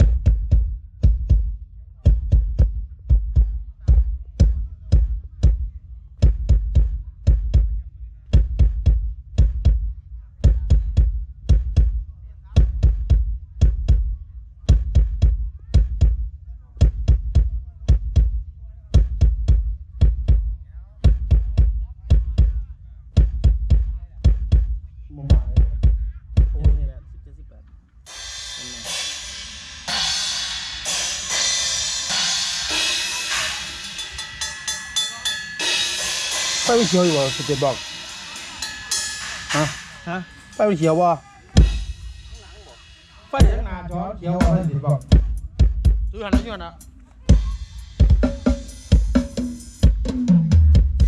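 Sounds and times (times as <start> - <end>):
kick and tom drum hits: 0.0 - 7.8
amplified drums beat: 0.0 - 27.4, 28.0 - 51.0
cymbal crashes: 28.1 - 43.8.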